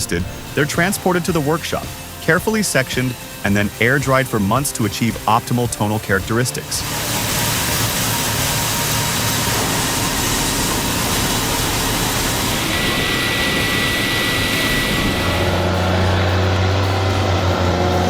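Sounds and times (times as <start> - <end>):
high whine: 0.0 - 18.0
loud rushing machinery noise: 0.0 - 18.0
low engine hum: 6.8 - 18.0.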